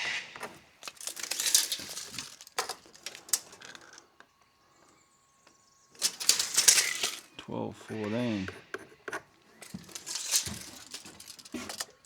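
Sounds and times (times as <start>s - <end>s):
tape measure and timber handling: 0.0s - 4.0s, 6.0s - 7.4s, 8.0s - 12.0s.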